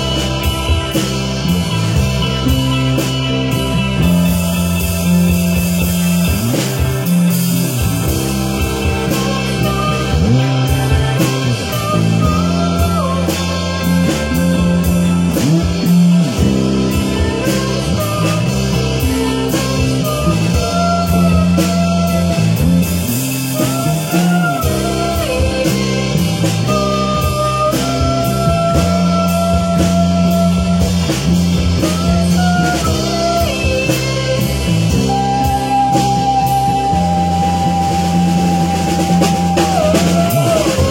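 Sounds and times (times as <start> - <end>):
bass line: 0.0 - 40.9
drum kit beat: 0.0 - 40.9
rock guitar melody: 0.0 - 40.9.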